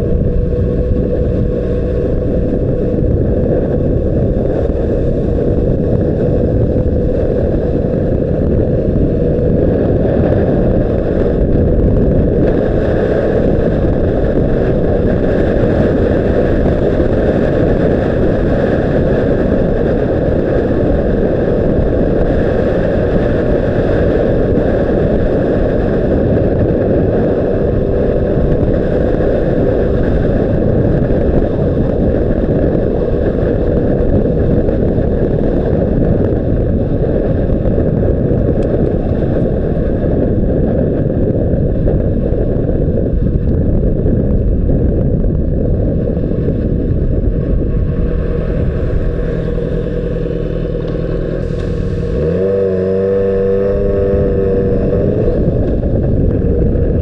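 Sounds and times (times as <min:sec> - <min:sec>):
motorcycle engine running: 0:00.0 - 0:57.0
wind noise on microphone: 0:00.0 - 0:57.0.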